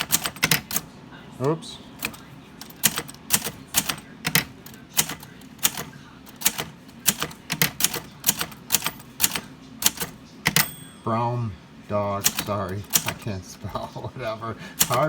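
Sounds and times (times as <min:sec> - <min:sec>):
typewriter keystrike clacks: 0:00.0 - 0:00.8, 0:02.0 - 0:10.8, 0:12.2 - 0:13.3, 0:14.8 - 0:15.0.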